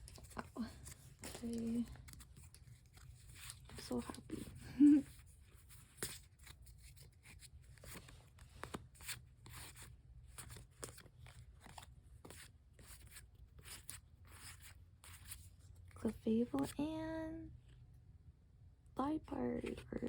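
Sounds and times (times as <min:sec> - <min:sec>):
cards and foil pack rustling: 0:00.0 - 0:16.8
low steady hum: 0:13.4 - 0:20.0.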